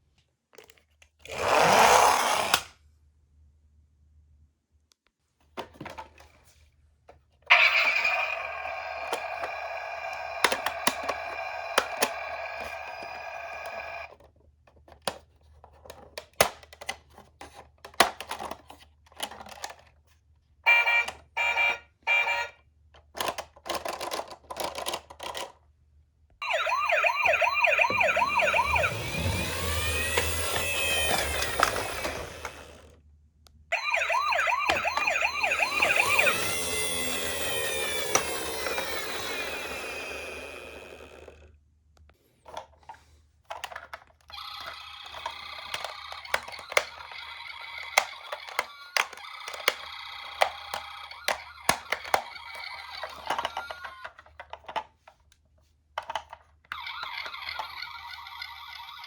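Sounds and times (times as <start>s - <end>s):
steady toy siren tone: 7.5s - 14.1s, 20.7s - 22.6s, 26.4s - 32.8s, 33.7s - 41.3s, 44.3s - 54.2s, 56.7s - 59.0s
warbling toy siren: 7.5s - 14.1s, 20.7s - 22.5s, 26.4s - 32.8s, 33.7s - 41.4s, 44.3s - 54.2s, 56.7s - 59.0s
plastic clicks and rattles: 14.2s - 20.0s, 23.0s - 25.6s, 42.4s - 47.1s, 47.8s - 55.4s, 56.0s - 57.7s.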